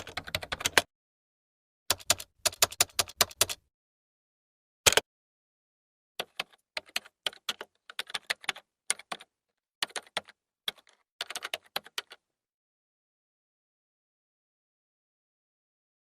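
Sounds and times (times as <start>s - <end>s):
computer keyboard typing: 0.0s - 0.9s, 1.9s - 3.7s, 6.2s - 12.2s.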